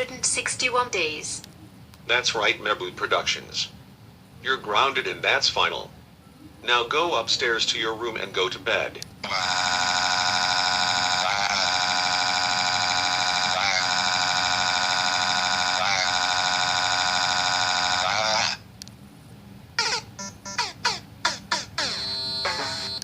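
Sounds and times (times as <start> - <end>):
electronic alarm tone: 9.2 - 18.6, 19.8 - 23.0.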